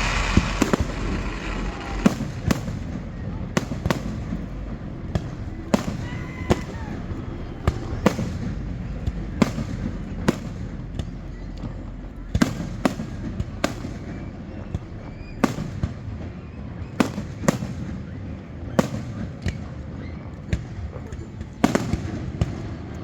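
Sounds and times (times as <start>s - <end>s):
low background rumble: 0.0s - 18.1s
fireworks bangs: 0.0s - 23.0s.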